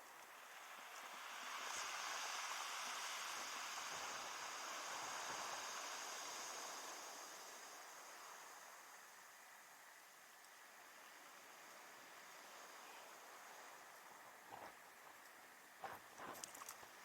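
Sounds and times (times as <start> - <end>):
surf washing on beach: 0.2 - 14.8.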